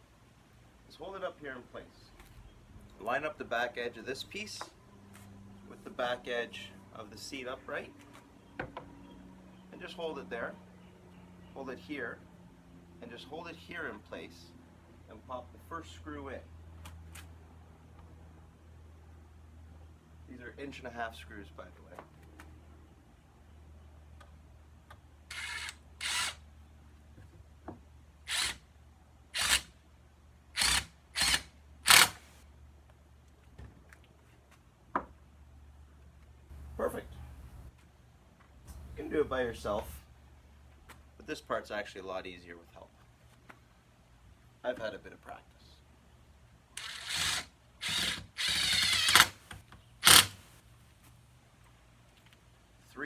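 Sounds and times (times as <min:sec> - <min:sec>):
cordless driver driving screws: 0:25.3 - 0:26.4, 0:28.3 - 0:28.6, 0:29.4 - 0:29.7, 0:30.6 - 0:32.4, 0:46.8 - 0:50.5.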